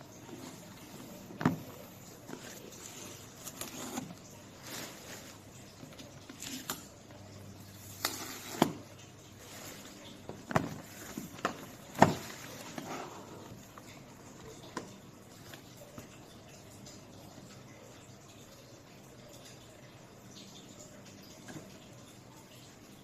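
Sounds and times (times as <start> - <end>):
packaging rustling: 0.3 - 6.8.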